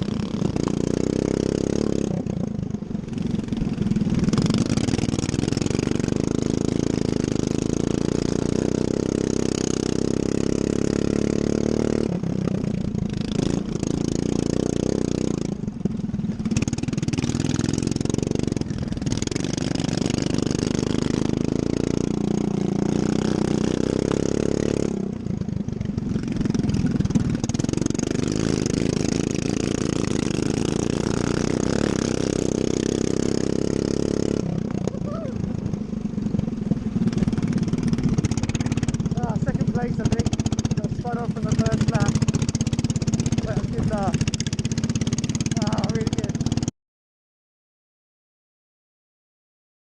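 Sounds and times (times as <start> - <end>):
lawn mower engine running hard: 0.0 - 46.7.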